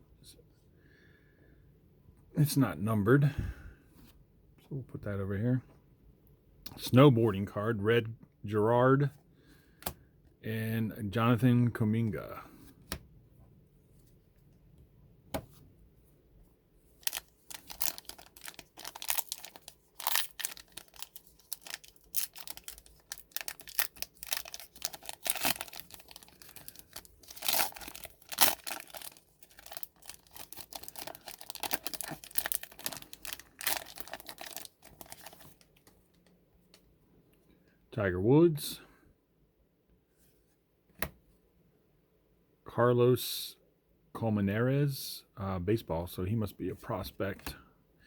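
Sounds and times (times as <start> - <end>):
foil wrapper tearing and crinkling: 17.0 - 35.7.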